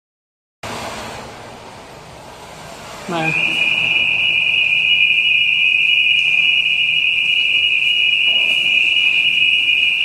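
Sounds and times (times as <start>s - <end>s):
fire alarm high-pitched tone: 3.1s - 10.0s.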